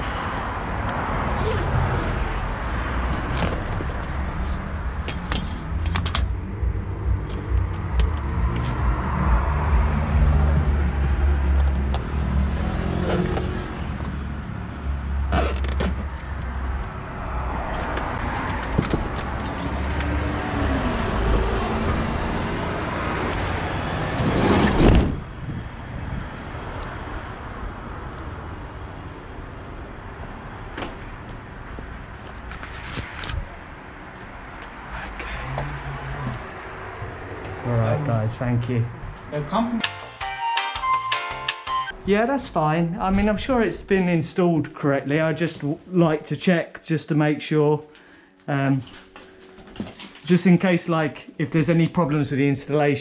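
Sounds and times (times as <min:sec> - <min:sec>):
motor vehicle rumbling: 0:00.0 - 0:39.3.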